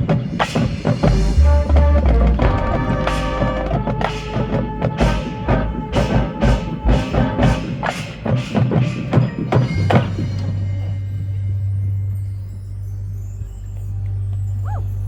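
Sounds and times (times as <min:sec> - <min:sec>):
marching band playing: 0:00.0 - 0:11.0
sharp percussion strikes: 0:00.0 - 0:15.0.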